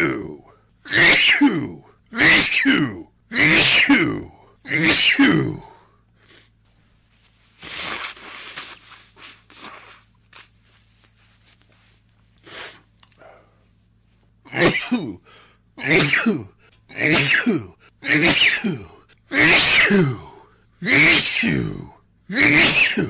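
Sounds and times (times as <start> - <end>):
man sneezing: 0.9 - 6.5, 14.5 - 23.0.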